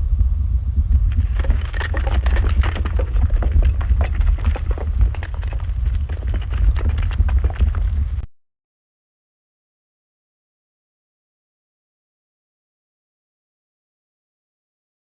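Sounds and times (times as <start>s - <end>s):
steady low rumble: 0.0s - 8.3s
irregular clicks and knocks: 1.0s - 8.0s.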